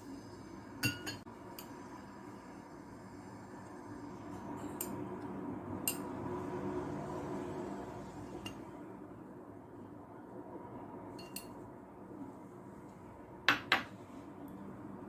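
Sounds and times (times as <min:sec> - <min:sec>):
utensils clinking against dishes: 0:11.2 - 0:11.6.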